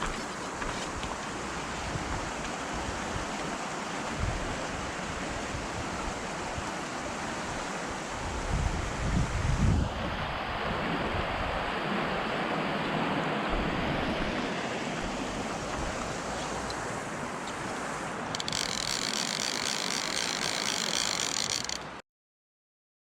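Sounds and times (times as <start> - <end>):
river water rushing: 11.8 - 22.0
high fluttering whirr: 18.2 - 22.0.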